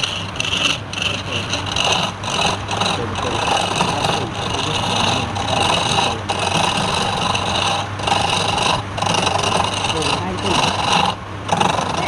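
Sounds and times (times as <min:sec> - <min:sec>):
lathe motor hum: 0:00.0 - 0:12.0
tool scraping spinning wood: 0:00.0 - 0:12.0.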